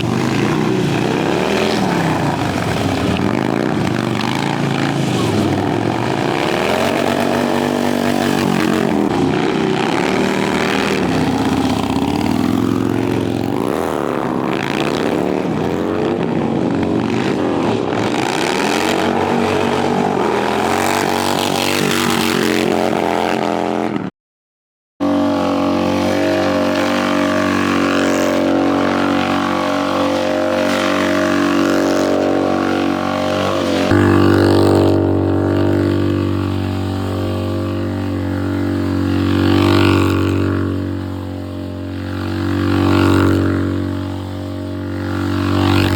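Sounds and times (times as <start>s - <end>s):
motorcycle engines revving: 0.0s - 24.1s, 25.0s - 45.9s.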